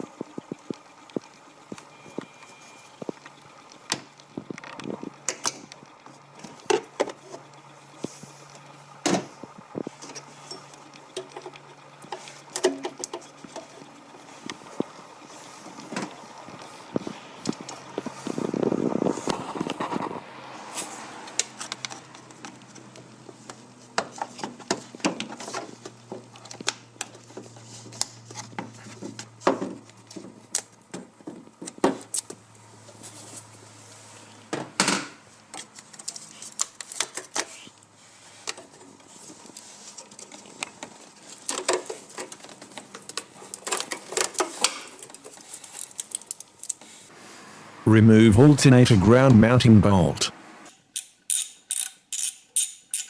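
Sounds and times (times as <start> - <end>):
tools and metal parts clinking: 50.9 - 53.0.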